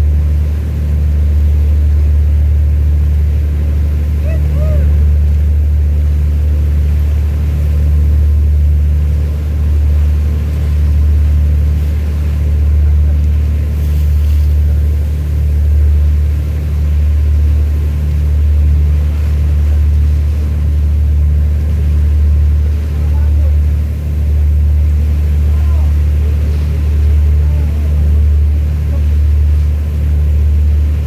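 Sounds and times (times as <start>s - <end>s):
ship engine droning: 0.0s - 31.0s.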